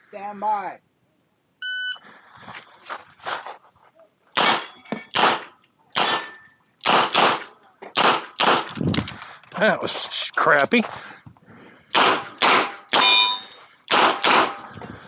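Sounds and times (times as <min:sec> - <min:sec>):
short metallic ring: 0:06.0 - 0:06.6, 0:13.0 - 0:13.6.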